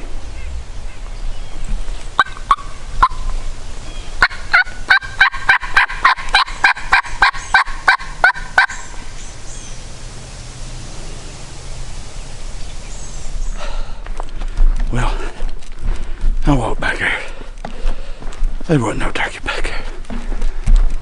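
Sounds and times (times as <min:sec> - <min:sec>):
turkey yelping: 0:02.2 - 0:09.9.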